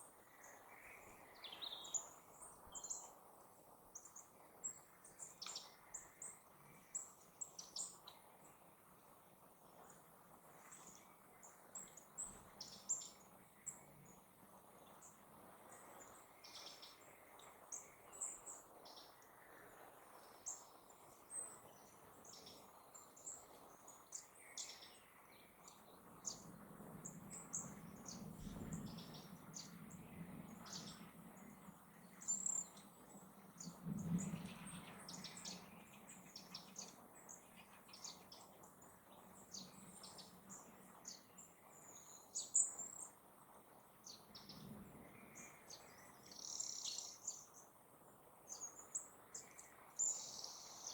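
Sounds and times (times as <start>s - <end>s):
small birds chirping: 0.0s - 50.9s
faint low rumble: 24.8s - 41.2s.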